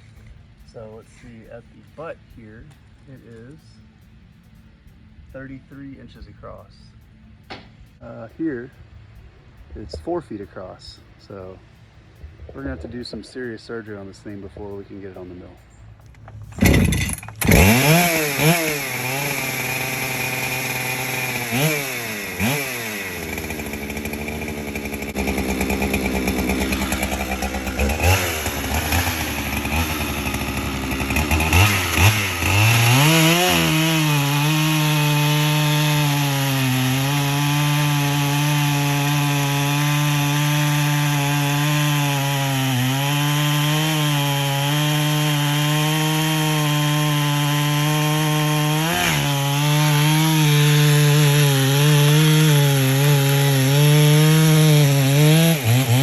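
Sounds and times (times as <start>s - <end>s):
chainsaw revving and cutting log: 14.3s - 56.0s.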